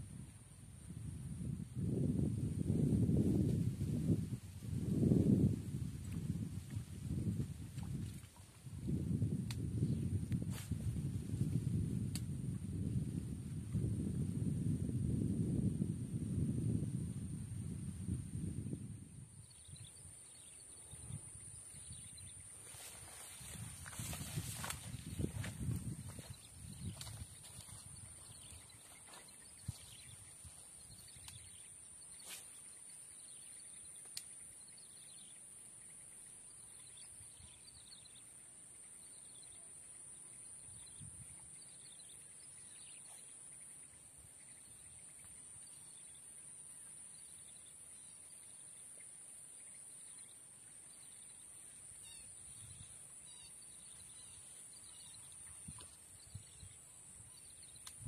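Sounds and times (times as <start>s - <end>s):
small birds chirping: 19.4s - 58.0s.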